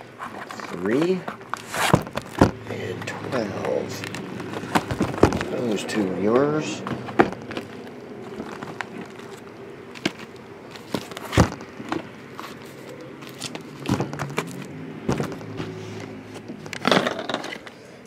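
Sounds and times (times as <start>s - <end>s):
boxes knocking on a table: 4.6s - 5.5s, 11.3s - 12.1s.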